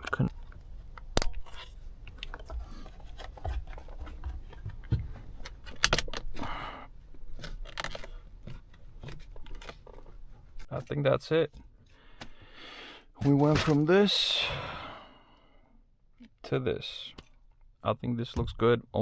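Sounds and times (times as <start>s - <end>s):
hard parts clicking and knocking: 0.0s - 6.5s.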